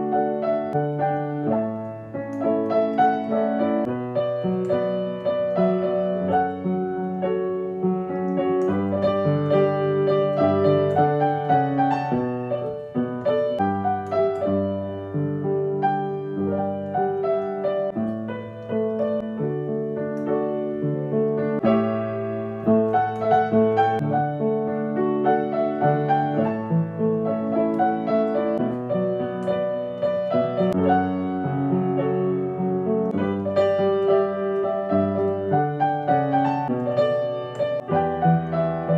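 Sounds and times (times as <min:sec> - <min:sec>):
piano playing pop song: 0:00.0 - 0:38.9.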